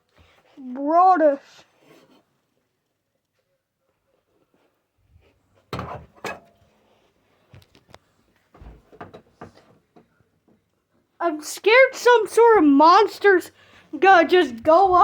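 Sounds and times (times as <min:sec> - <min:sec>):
objects knocking and clacking: 0:08.6 - 0:10.6.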